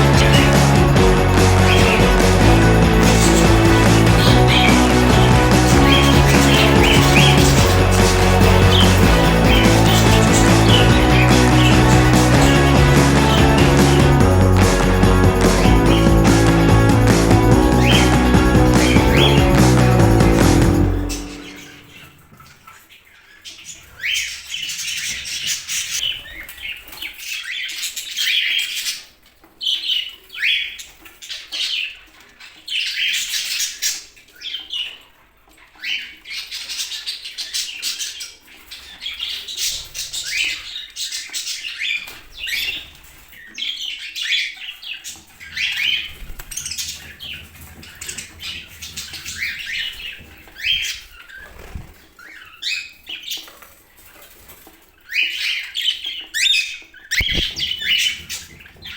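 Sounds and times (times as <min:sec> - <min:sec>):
budgerigars chattering and chirping: 0:00.0 - 0:14.1, 0:35.8 - 0:53.5, 0:55.1 - 0:58.9.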